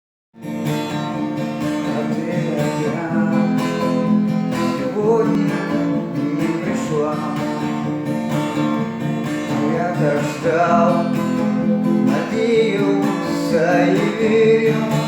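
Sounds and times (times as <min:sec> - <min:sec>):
acoustic guitar strumming chords: 0:00.4 - 0:15.0.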